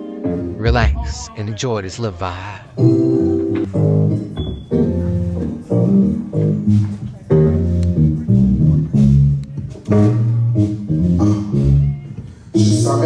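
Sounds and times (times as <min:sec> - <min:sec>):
guitar: 0:00.0 - 0:13.0
bass guitar: 0:00.3 - 0:01.5, 0:02.9 - 0:13.0
live band playing: 0:03.8 - 0:12.9.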